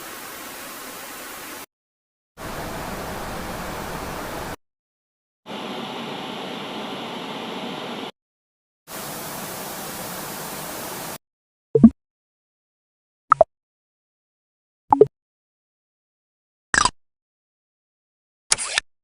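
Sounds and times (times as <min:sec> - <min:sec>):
static hiss bursts: 0:08.9 - 0:11.2.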